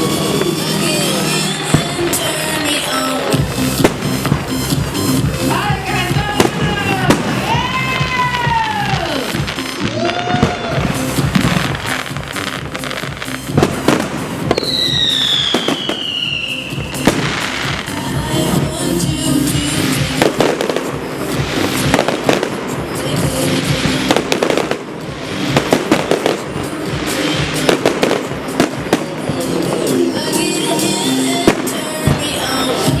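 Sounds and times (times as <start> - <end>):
aerial fireworks bursting: 0.0 - 33.0
music: 0.0 - 33.0
falling firework whistle: 7.1 - 12.5, 13.6 - 17.9.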